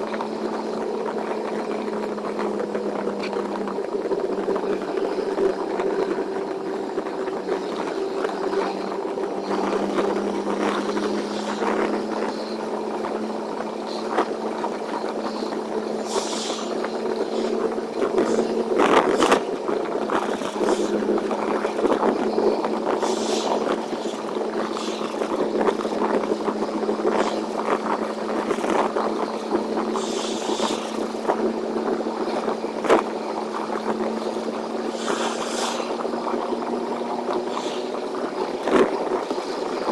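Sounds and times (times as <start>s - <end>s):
truck engine droning: 0.0s - 39.9s
short hissing swishes: 15.3s - 17.6s, 23.0s - 25.3s, 30.0s - 31.1s, 34.9s - 36.0s.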